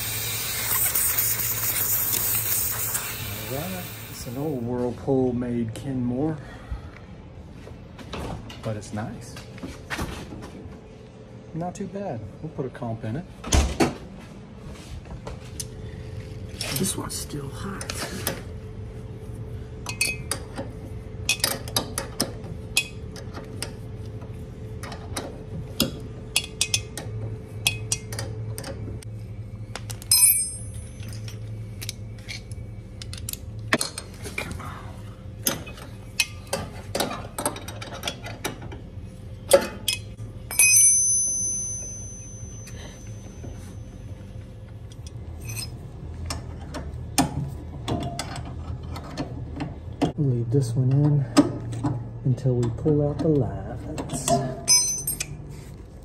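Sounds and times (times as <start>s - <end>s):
steady low hum: 0.0s - 56.0s
hand tools clinking on metal: 54.1s - 55.4s.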